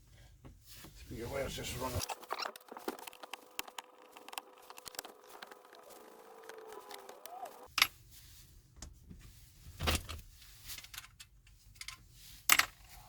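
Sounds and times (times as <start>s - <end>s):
steady hum: 1.1s - 7.7s.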